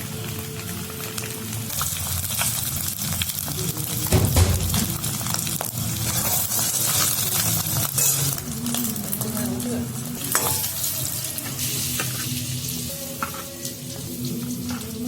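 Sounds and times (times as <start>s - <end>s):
food sizzling in hot oil: 0.0s - 15.0s
loud knock: 4.1s - 5.3s.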